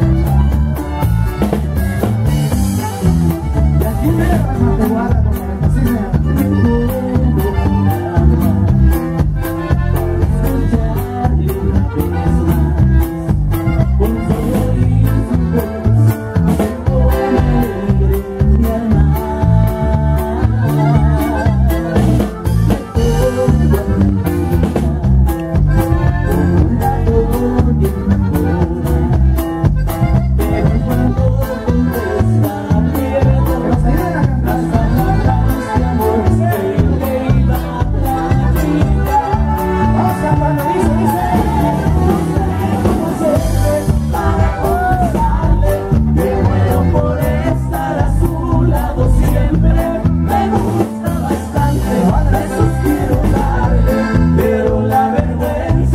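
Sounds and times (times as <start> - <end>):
heavy bass line: 0.0 - 55.9
live band playing: 0.0 - 55.9
person singing: 2.7 - 29.2, 30.3 - 55.9
drum beat: 20.0 - 55.9.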